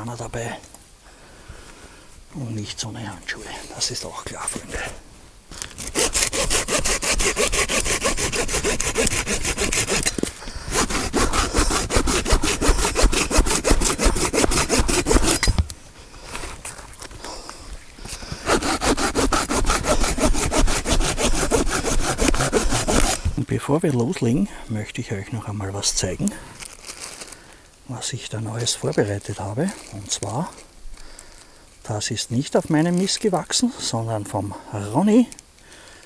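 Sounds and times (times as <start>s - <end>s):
hand saw cutting wood: 5.8s - 15.6s, 18.4s - 23.4s.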